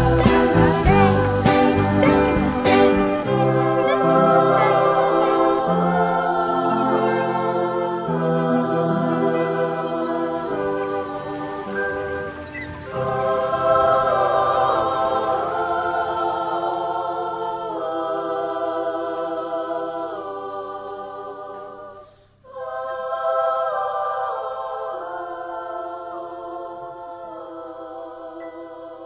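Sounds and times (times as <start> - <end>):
wordless choir-like music: 0.0 - 29.0.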